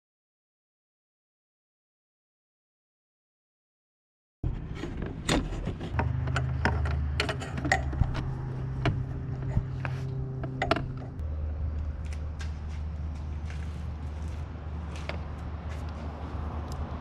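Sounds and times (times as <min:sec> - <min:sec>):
steady low hum: 0:04.4 - 0:17.0
tools clicking and knocking: 0:04.8 - 0:11.2.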